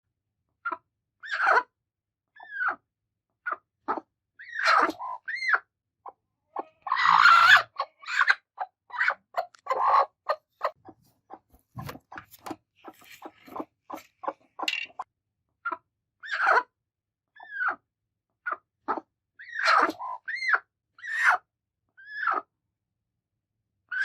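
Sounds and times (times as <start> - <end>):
hens clucking and growling: 6.4 - 14.7
hen squawking: 6.6 - 10.8.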